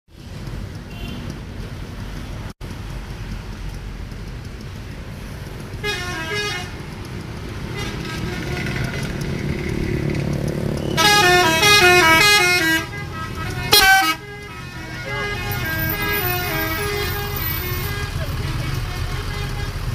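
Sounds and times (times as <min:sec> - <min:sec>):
bus engines and traffic rumble: 0:00.1 - 0:19.9
multi-tone bus horn tune: 0:00.9 - 0:01.3, 0:05.8 - 0:06.9, 0:07.6 - 0:09.4, 0:10.8 - 0:19.9.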